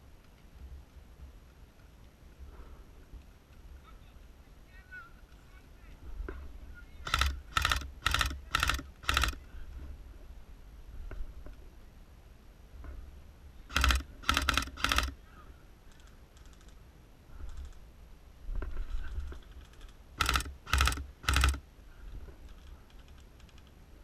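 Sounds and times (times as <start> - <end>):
airsoft gun bursts: 7.0 - 9.4, 13.7 - 15.2, 20.2 - 21.6
distant gunfire bursts: 7.0 - 9.4, 13.7 - 15.2, 20.2 - 21.6.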